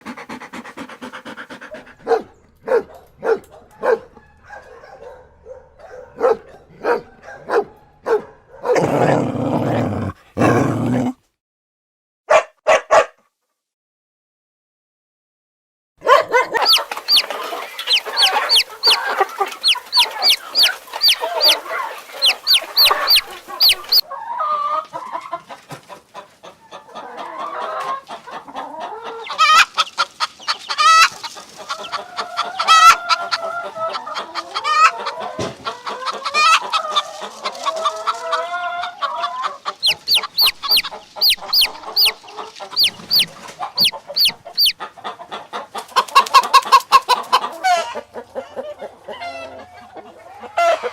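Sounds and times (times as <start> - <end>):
chickens clucking: 0.1 - 10.7, 16.1 - 50.9
chicken squawks: 16.1 - 24.8, 38.4 - 48.6.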